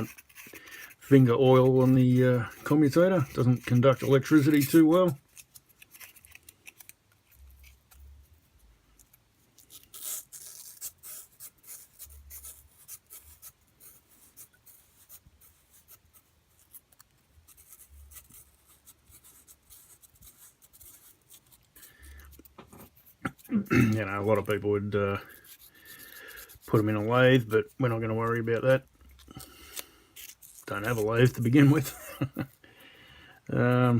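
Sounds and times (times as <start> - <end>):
sandpaper scratching on metal: 0.0 - 5.2, 24.0 - 28.8.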